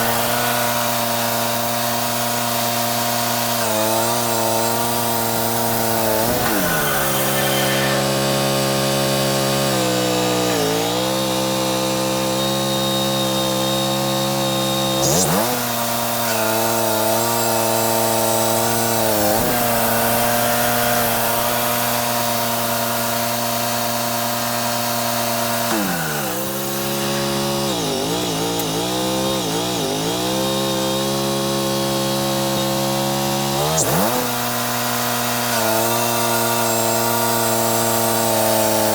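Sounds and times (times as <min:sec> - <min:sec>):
bandsaw mill cutting log: 0:00.0 - 0:38.9.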